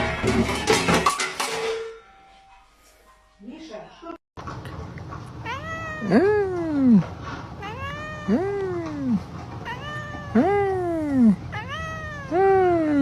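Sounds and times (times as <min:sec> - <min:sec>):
cat meowing: 0:05.4 - 0:13.0.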